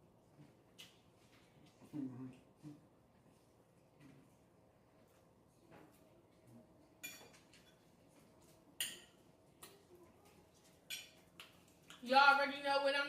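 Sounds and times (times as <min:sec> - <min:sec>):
tableware clinking: 0:07.0 - 0:07.9, 0:08.8 - 0:09.2, 0:10.9 - 0:11.2.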